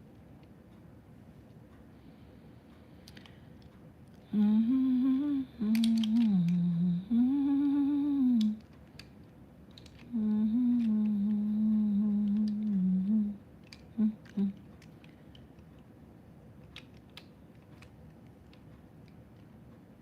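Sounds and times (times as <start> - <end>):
woman humming: 4.2 - 8.6, 10.0 - 14.6
faint light clicks: 5.6 - 6.7, 7.6 - 15.9.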